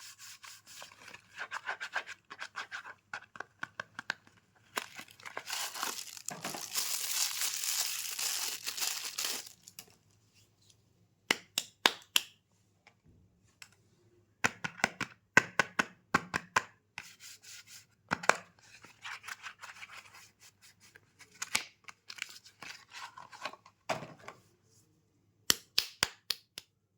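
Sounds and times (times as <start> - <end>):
packaging tearing: 4.7 - 9.8
wrapper crinkling: 4.7 - 10.0.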